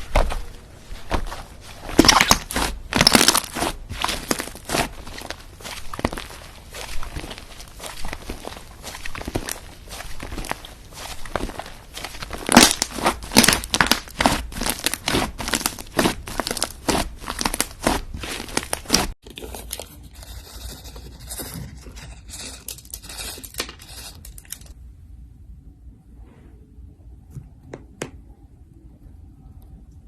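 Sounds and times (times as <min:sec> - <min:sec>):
slime squelching and crackling: 0:01.0 - 0:19.2.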